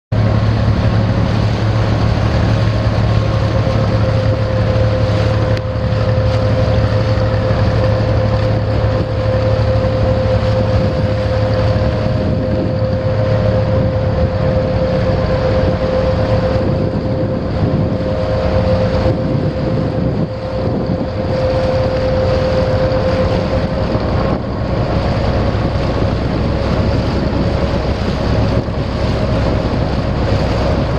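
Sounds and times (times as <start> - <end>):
motorboat engine droning: 0.1 - 30.9
wind on microphone: 0.1 - 30.9.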